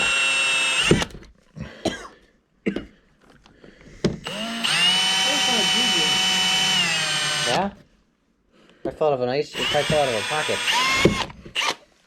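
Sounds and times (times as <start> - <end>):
power drill boring: 0.0 - 1.3, 4.2 - 7.8, 9.5 - 11.8
person coughing: 1.6 - 3.0.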